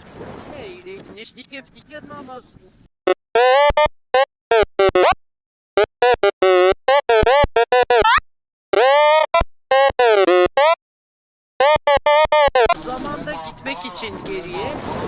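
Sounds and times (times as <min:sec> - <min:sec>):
stuttering buzzy glitch effect: 0:03.1 - 0:05.2, 0:05.8 - 0:08.2, 0:08.8 - 0:10.8, 0:11.6 - 0:12.8.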